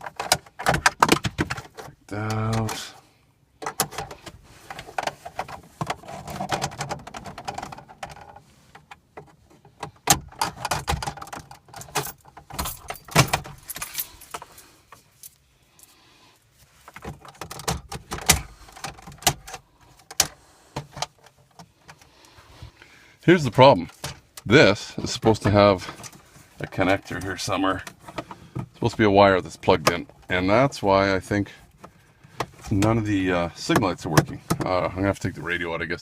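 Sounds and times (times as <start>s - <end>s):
plastic trim clicking and rattling: 3.6s - 13.9s, 16.9s - 22.1s.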